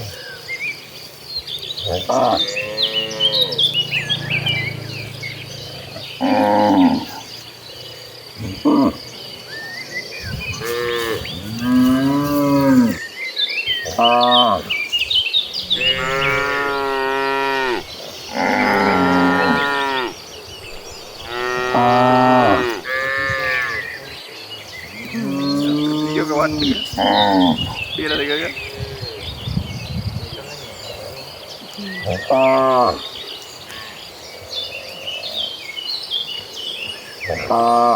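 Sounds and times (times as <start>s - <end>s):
birds chirping faintly: 0.0s - 37.9s
cattle mooing: 1.9s - 7.2s, 10.4s - 13.0s, 15.6s - 24.1s.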